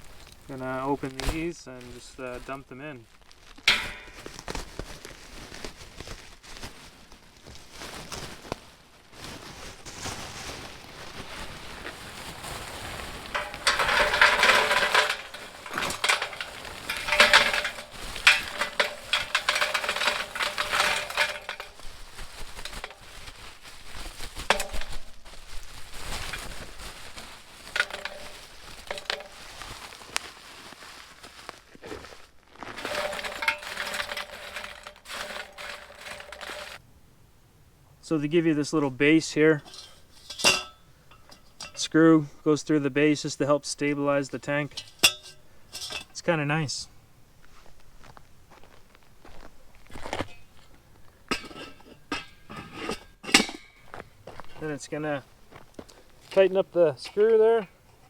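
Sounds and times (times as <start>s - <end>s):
stones clattering into a bowl: 3.5s - 4.6s, 12.9s - 23.3s, 24.4s - 25.0s, 27.6s - 29.8s, 31.8s - 36.8s.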